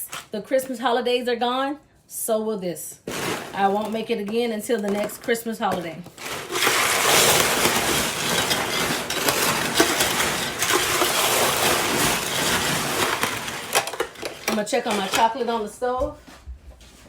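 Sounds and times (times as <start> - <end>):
popcorn crunching and rustling: 3.1 - 15.7.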